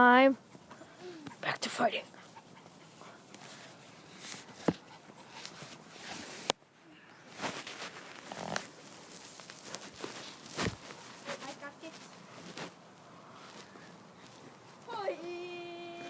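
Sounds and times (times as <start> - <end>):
dogs scuffling: 7.4 - 16.0.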